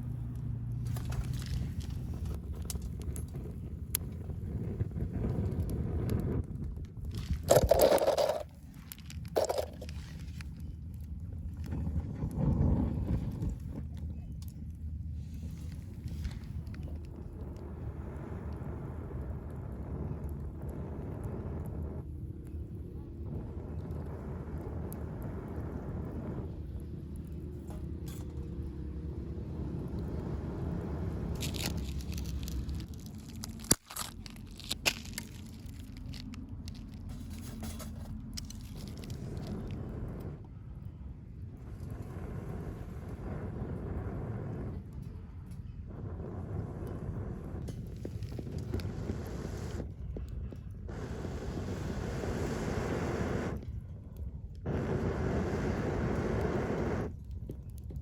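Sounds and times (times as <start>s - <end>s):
wood crackling and snapping: 0.0s - 17.8s, 26.5s - 40.6s
wind buffeting microphone: 0.0s - 33.2s, 38.2s - 58.0s
steady low rumble: 0.0s - 58.0s.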